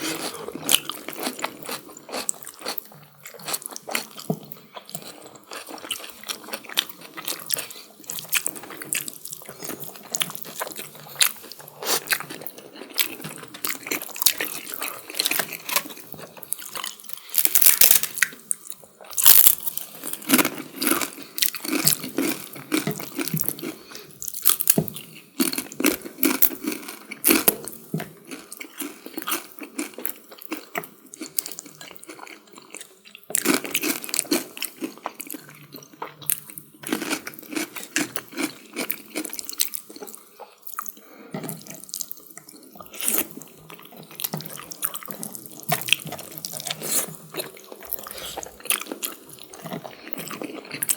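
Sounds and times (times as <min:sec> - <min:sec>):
wet chewing: 0:41.6 - 0:50.9.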